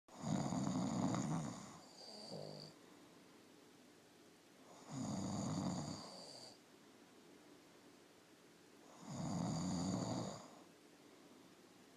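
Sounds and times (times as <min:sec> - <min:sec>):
loud snoring with whistle: 0:00.1 - 0:02.7, 0:04.8 - 0:06.6, 0:08.9 - 0:10.6.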